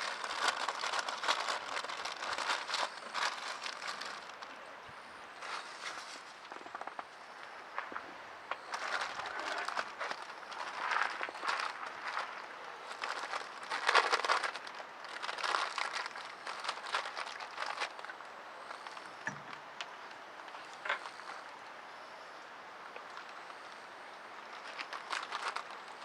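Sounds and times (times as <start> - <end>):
rustling and crinkling handling: 0.0 - 21.7, 22.8 - 26.0.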